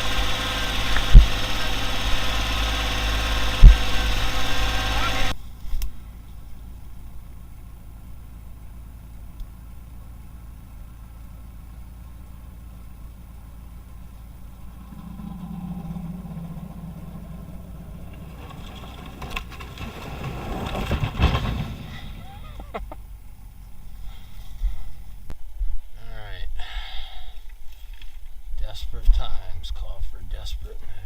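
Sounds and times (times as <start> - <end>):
vehicle engine idling: 0.0 - 31.0
clattering: 14.7 - 22.8.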